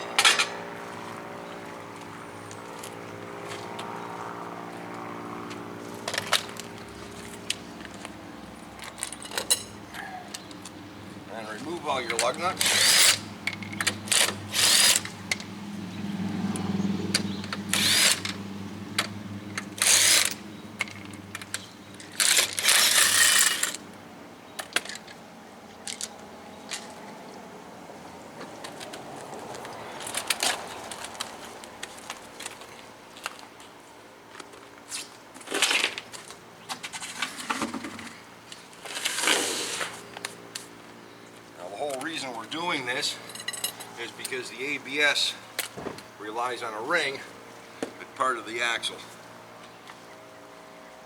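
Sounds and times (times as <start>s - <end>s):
impact wrench bursts: 12.1s - 15.2s, 17.6s - 18.4s, 19.6s - 20.4s.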